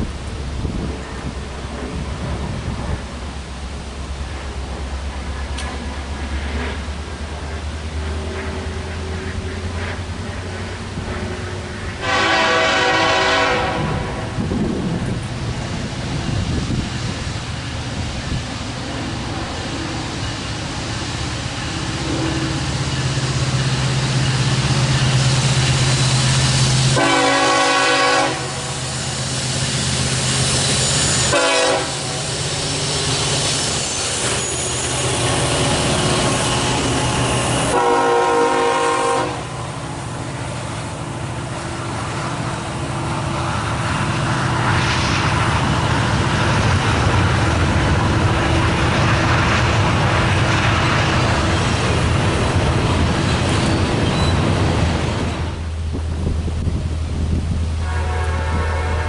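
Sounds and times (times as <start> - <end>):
diesel train engine running: 0.0 - 59.0
locomotive horn blasts: 12.0 - 14.4, 27.0 - 28.7, 31.2 - 32.2, 37.6 - 39.6, 57.8 - 59.0.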